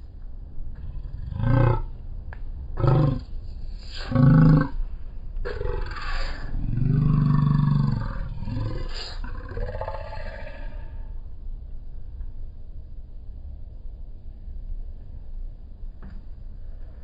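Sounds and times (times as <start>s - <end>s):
deep voice growling and roaring: 0.7s - 2.0s, 2.8s - 11.2s.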